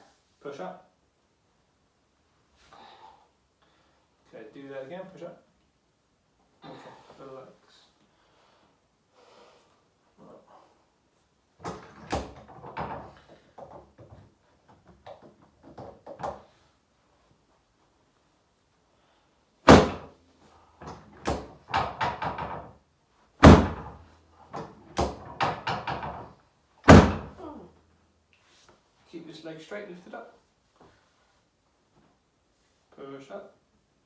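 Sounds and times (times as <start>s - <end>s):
loud thuds: 19.7s - 20.2s, 23.4s - 26.2s, 26.9s - 27.4s.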